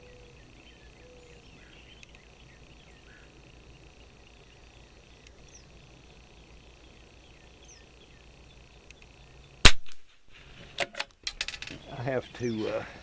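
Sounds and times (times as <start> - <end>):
bird chirps: 0.0 - 9.6
high insect drone: 0.0 - 13.0.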